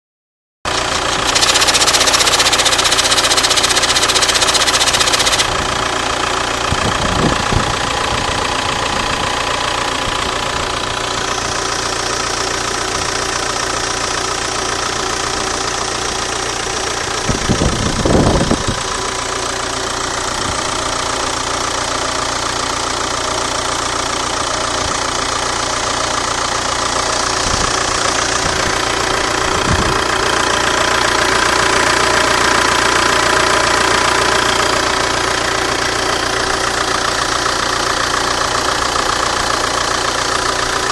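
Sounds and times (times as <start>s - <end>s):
car engine idling: 0.7s - 40.9s
valve clicking and rattling: 0.8s - 5.7s
hiss: 1.0s - 5.5s.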